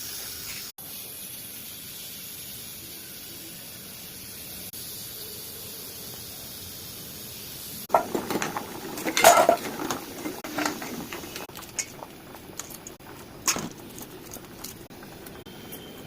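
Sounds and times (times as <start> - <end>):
kitchen utensils clinking: 7.9 - 16.0.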